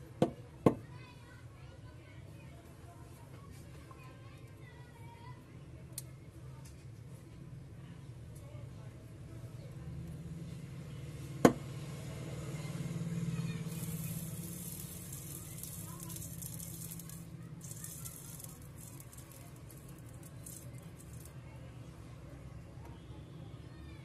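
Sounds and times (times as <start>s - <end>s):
soldering hiss with crackle: 13.7s - 20.6s.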